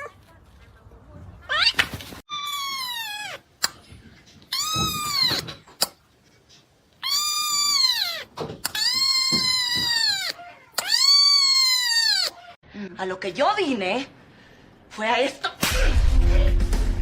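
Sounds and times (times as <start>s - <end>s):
cat meowing: 1.5s - 3.4s, 7.0s - 12.6s.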